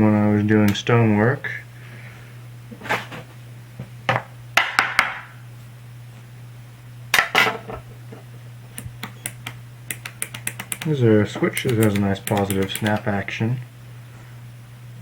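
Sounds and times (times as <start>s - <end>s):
sharp clicks and knocks: 8.8s - 11.0s, 11.6s - 13.1s.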